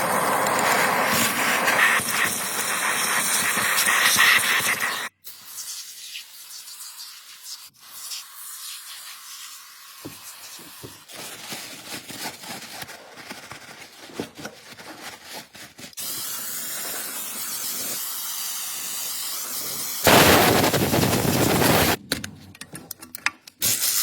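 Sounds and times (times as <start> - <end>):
air jet hissing: 16.0 - 22.0.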